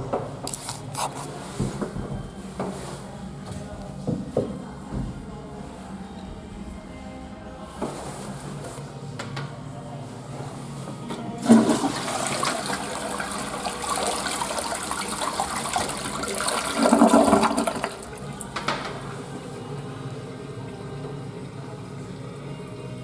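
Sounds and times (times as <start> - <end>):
toilet flushing: 10.2 - 23.0.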